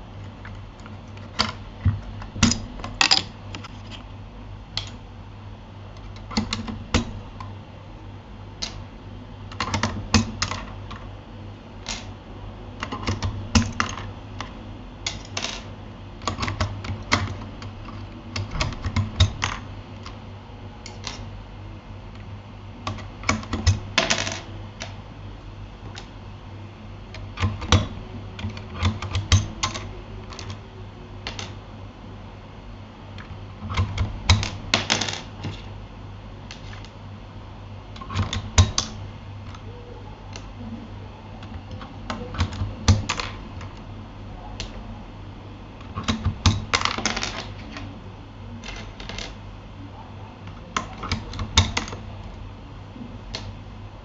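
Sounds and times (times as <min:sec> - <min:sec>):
steady low hum: 0:00.0 - 0:54.0
mechanical keyboard typing: 0:06.0 - 0:07.5, 0:09.5 - 0:11.0, 0:12.8 - 0:14.5, 0:16.2 - 0:19.6, 0:27.2 - 0:30.6.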